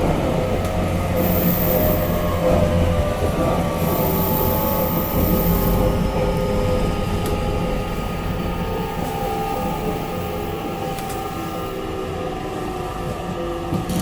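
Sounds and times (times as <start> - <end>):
traction motor whine: 0.0 - 12.8
train wheel and track rumble: 0.0 - 14.0.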